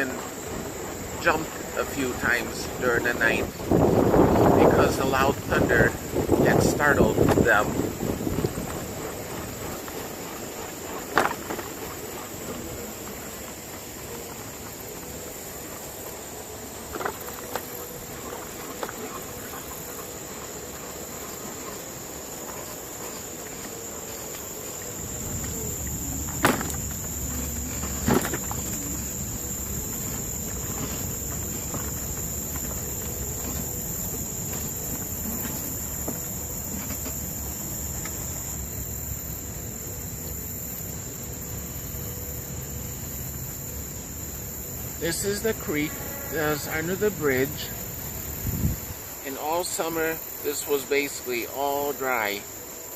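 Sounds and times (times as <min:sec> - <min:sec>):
crickets and insects chirping: 0:00.0 - 0:52.9.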